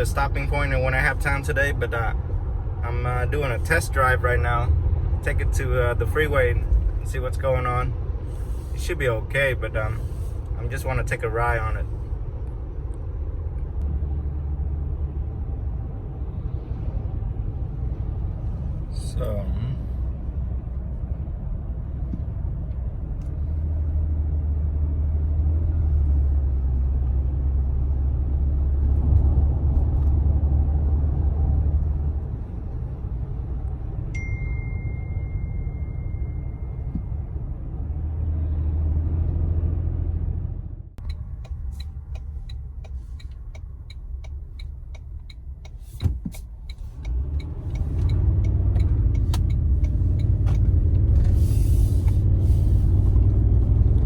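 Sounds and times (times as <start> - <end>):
road and engine rumble: 0.0 - 54.0
high beep: 34.2 - 36.9
regular clicking: 41.0 - 50.7.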